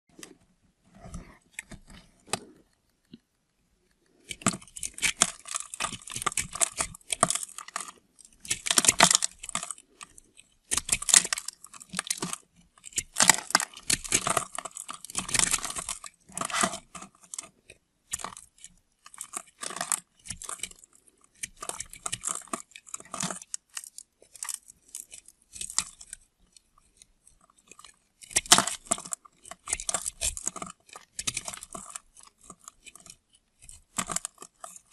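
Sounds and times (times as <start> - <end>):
blade cutting through soap: 1.2 - 34.9.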